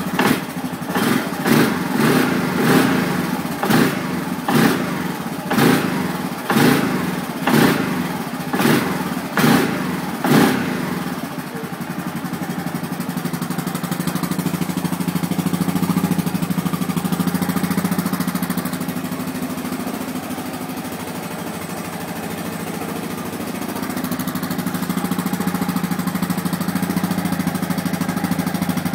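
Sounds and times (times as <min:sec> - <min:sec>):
atv engine revving and idling: 0:00.0 - 0:28.9.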